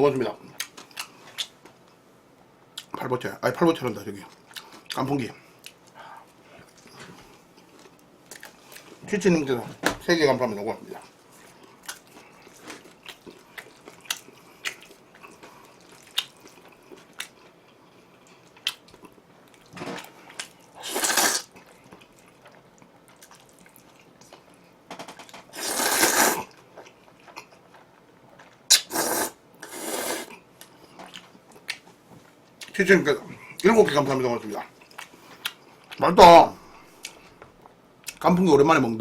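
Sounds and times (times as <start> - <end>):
wet chewing: 11.0 - 19.7.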